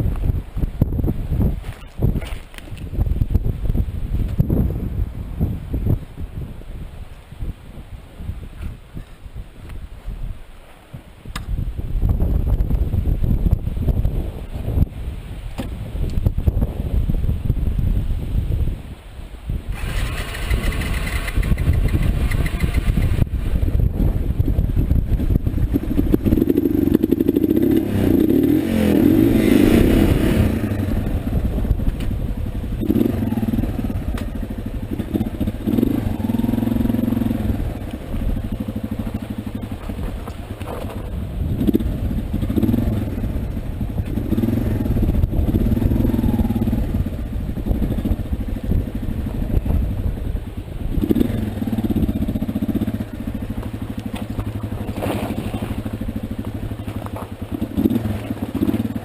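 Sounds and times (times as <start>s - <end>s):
motorcycle engine revving: 19.7s - 59.0s
clatter: 19.8s - 23.3s, 38.5s - 42.7s.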